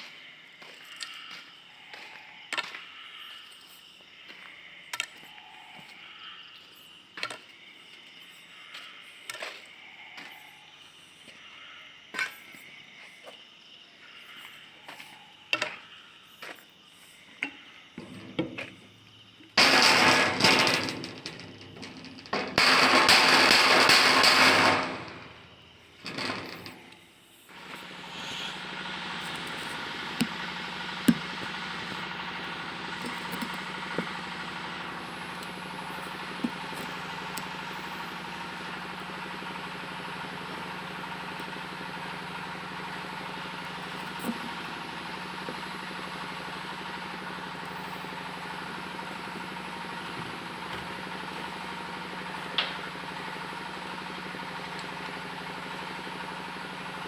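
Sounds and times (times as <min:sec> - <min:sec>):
engine humming: 0:17.7 - 0:57.0
sharp knocks and clicks: 0:19.6 - 0:25.3.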